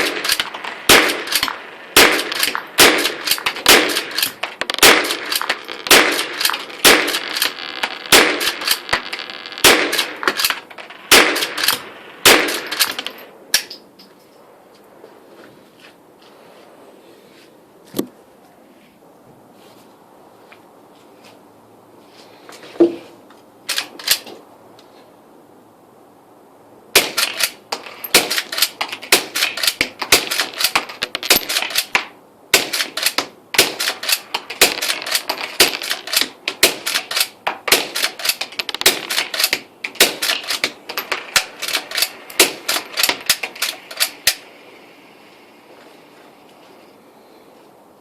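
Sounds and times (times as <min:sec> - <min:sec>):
suppressed rifle shots: 0:00.0 - 0:13.7, 0:27.0 - 0:44.4.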